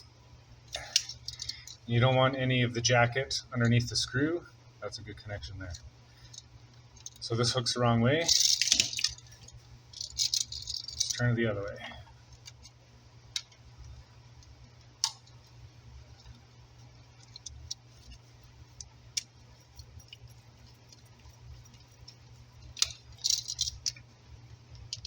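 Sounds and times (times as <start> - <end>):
small metallic clicks and rattles: 0.7 - 1.8, 5.7 - 7.2, 8.2 - 11.2, 17.2 - 24.1, 24.7 - 25.0.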